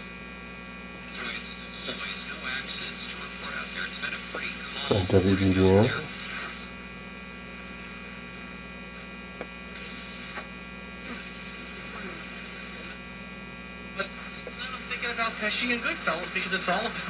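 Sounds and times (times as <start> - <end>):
radio speaker mains hum: 0.0 - 17.0.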